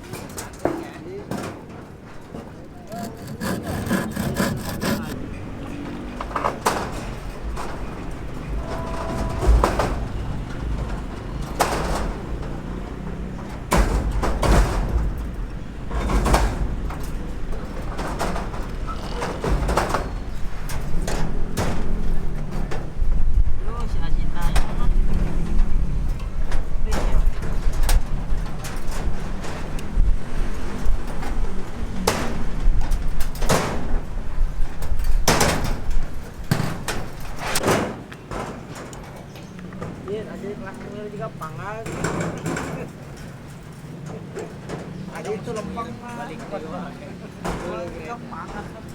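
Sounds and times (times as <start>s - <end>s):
loud scraping knocks: 2.4s - 23.6s.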